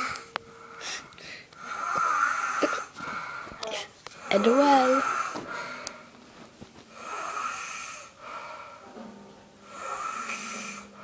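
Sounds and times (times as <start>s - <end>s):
low hum: 0.0s - 1.9s
person snoring: 1.6s - 2.9s, 4.2s - 5.8s, 6.9s - 8.2s, 9.6s - 11.0s.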